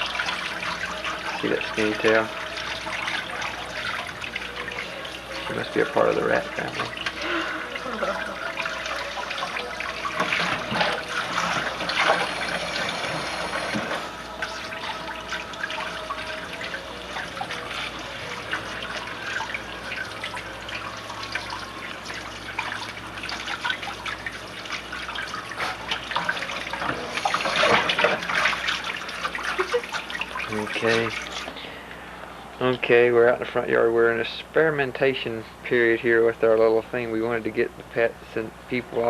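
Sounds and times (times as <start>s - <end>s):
tap water running and splashing: 0.0s - 38.1s.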